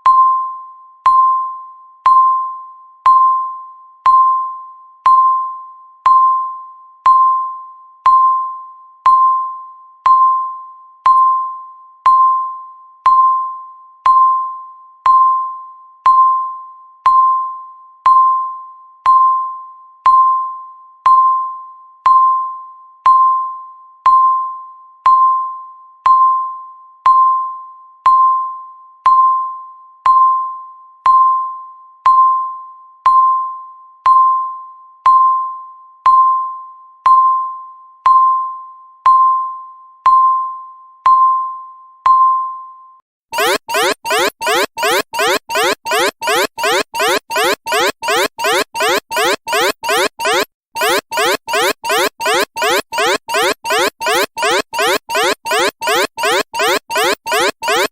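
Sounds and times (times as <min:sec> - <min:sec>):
timer beeps: 0:43.4 - 0:57.9.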